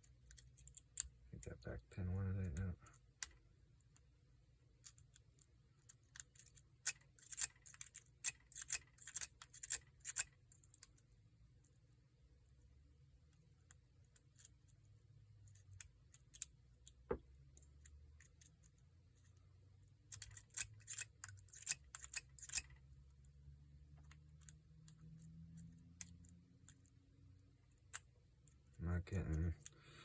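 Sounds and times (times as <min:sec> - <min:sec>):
metallic lock pick clicking: 0:04.8 - 0:11.0, 0:20.0 - 0:22.8.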